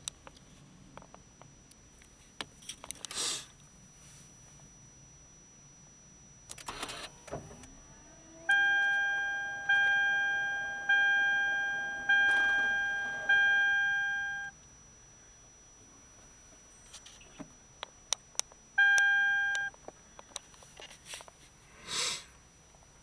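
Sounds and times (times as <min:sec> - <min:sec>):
faint high whine: 0:00.0 - 0:23.0
dashboard warning chime: 0:04.0 - 0:20.2.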